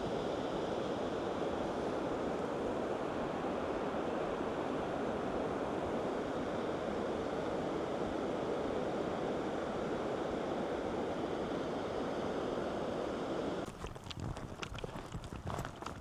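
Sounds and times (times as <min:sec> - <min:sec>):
footsteps: 0:13.7 - 0:16.0.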